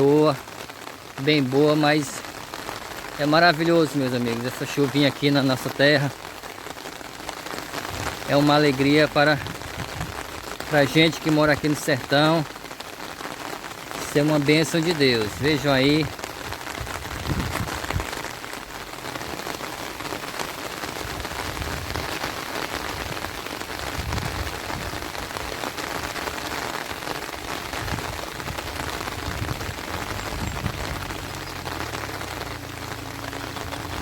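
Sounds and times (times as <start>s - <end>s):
light rain drizzle: 0.0s - 34.0s
low rumble: 28.0s - 34.0s.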